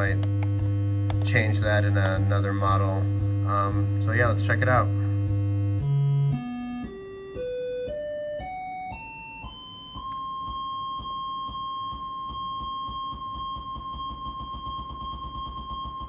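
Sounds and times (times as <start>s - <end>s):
buzzy electronic synth tone: 0.0s - 7.8s.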